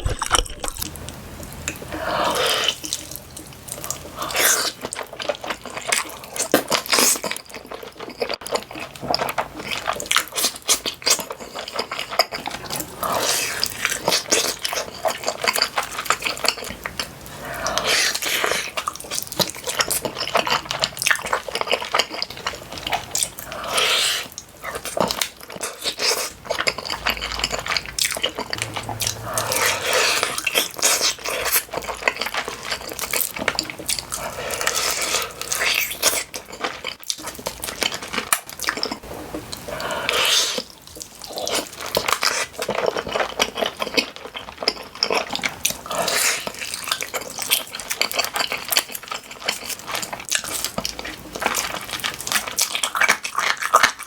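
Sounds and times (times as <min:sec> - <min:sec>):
wet chewing and mouth smacking: 0:00.0 - 0:54.0.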